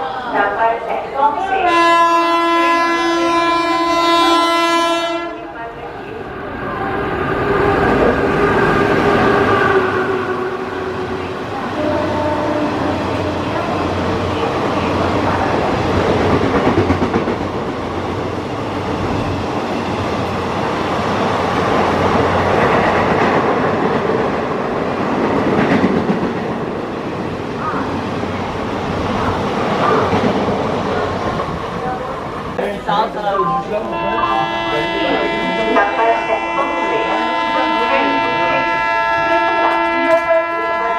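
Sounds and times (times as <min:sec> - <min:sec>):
locomotive horn: 0:01.6 - 0:05.5, 0:09.3 - 0:15.2, 0:33.8 - 0:40.9
train coaches clattering over rails: 0:07.1 - 0:40.9.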